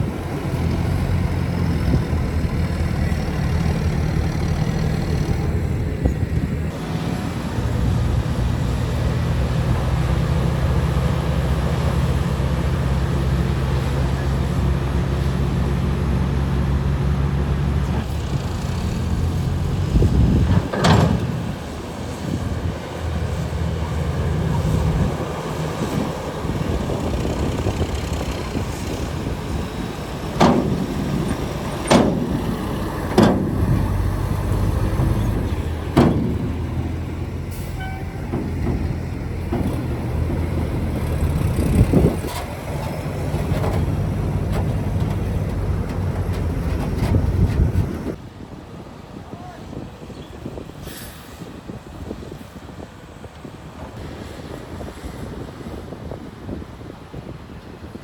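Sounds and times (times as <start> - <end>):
diesel engine running: 0.0 - 48.2
sharp engine knocks: 19.8 - 21.7, 30.2 - 48.2.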